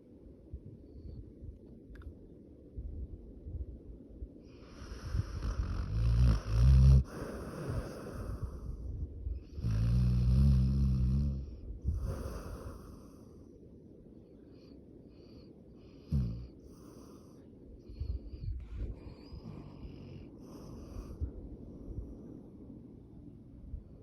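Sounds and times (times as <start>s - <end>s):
dog snoring: 4.5s - 8.8s, 9.5s - 13.2s, 15.8s - 17.4s, 18.9s - 21.3s.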